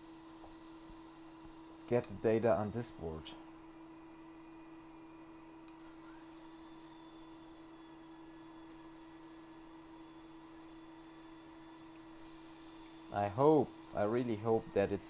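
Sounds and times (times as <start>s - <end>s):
faint electrical hum: 0.0s - 15.0s
tiny click: 5.6s - 6.2s.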